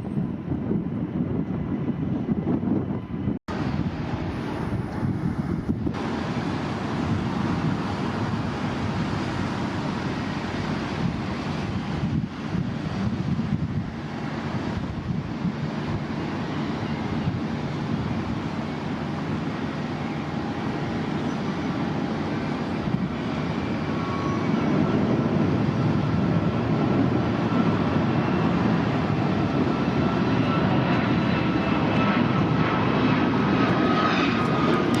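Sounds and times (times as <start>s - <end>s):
jet engines rumbling: 0.0s - 35.0s.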